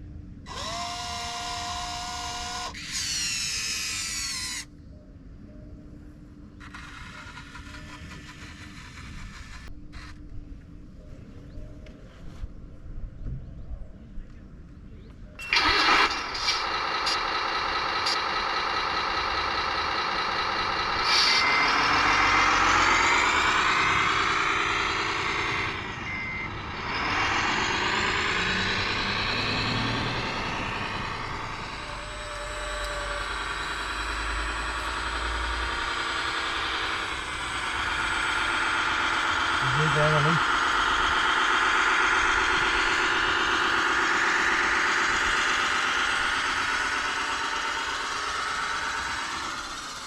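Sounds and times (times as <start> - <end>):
reversing beep: 15.4 - 15.6, 21.1 - 29.7
simulated diesel engine revving: 15.4 - 50.0.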